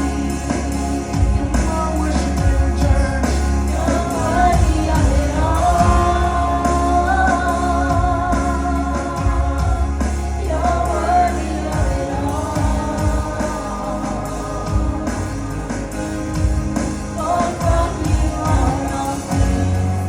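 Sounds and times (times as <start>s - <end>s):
band accompaniment with bass: 0.0s - 20.0s.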